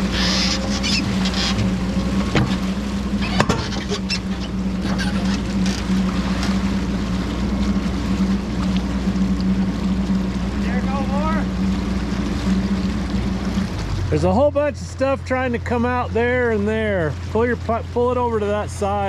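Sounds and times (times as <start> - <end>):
sharp knocks: 2.3 - 2.7.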